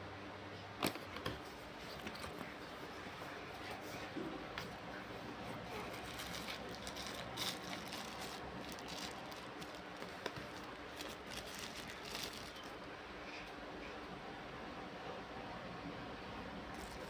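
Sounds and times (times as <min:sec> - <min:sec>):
packaging rustling: 0:05.6 - 0:12.8.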